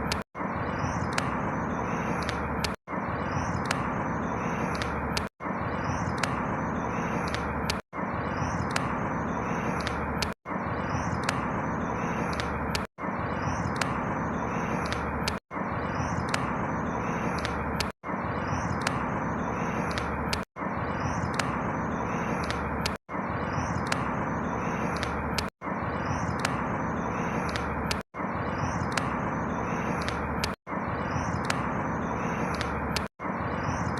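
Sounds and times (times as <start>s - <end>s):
faint bird chirps: 0.0s - 33.9s.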